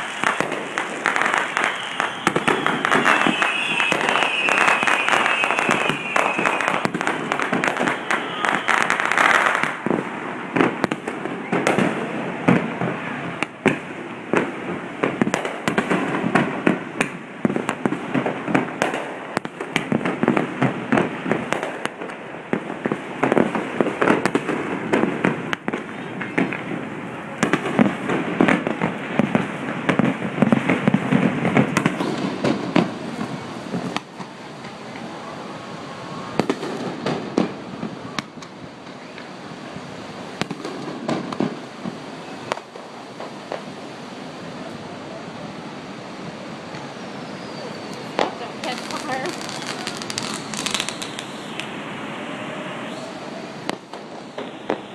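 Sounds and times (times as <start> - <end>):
fireworks bangs and pops: 0.0 - 35.4, 36.0 - 45.5, 46.2 - 54.9.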